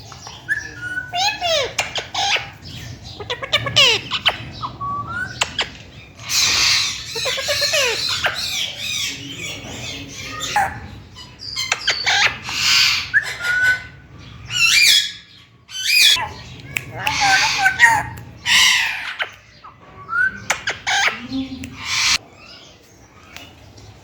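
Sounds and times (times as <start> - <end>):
parrot harsh screeches: 17.0 - 19.2.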